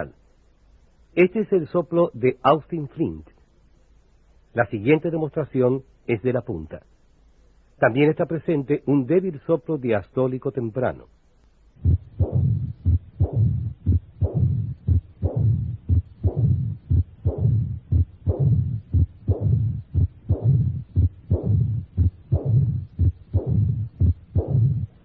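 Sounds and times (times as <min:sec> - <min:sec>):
faint heart murmur: 0:11.8 - 0:25.0
heartbeat through stethoscope: 0:11.8 - 0:25.0
low diastolic rumble: 0:11.8 - 0:25.0.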